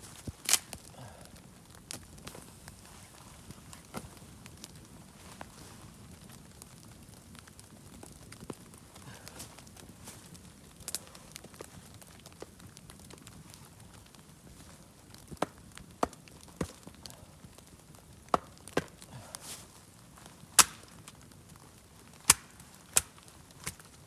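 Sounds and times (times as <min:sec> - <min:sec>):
wood chopping strikes: 0:18.3 - 0:19.0, 0:20.6 - 0:20.9, 0:22.3 - 0:23.8.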